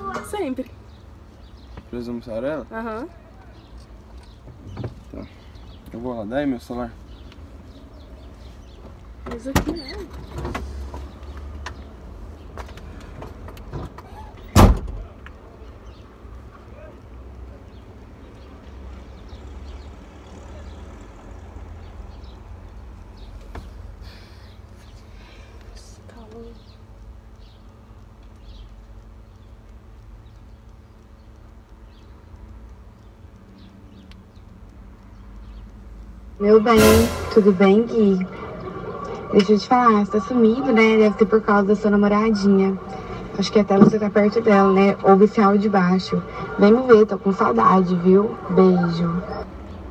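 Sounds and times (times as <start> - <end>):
low rumble inside car: 24.4 - 26.6, 36.1 - 49.9
loud heavy thump: 36.8 - 38.4
car cabin rumble: 39.3 - 46.2.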